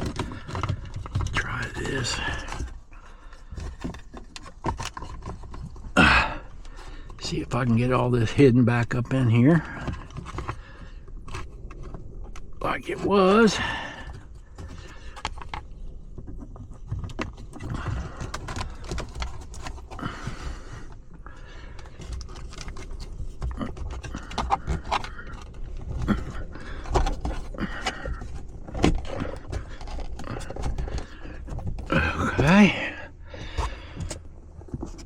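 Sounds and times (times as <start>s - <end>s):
plastic trim scraping and rustling: 0.0s - 35.0s
person breathing hard: 1.8s - 4.0s, 5.9s - 7.2s, 13.5s - 15.6s, 17.6s - 19.2s, 19.9s - 22.4s, 23.4s - 34.5s.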